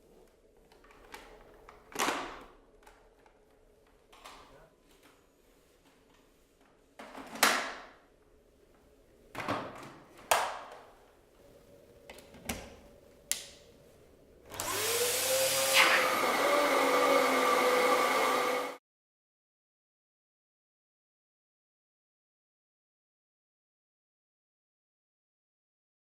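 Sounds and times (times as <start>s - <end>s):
vacuum cleaner motor whine: 14.5s - 18.8s.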